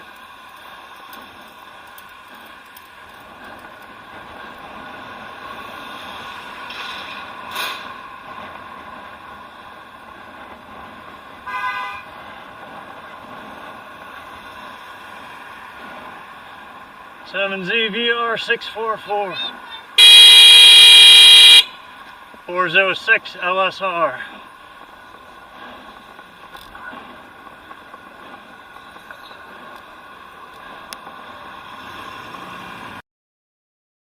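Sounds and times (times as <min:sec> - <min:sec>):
road traffic noise: 0:00.0 - 0:33.0
car horn honk: 0:20.0 - 0:21.7.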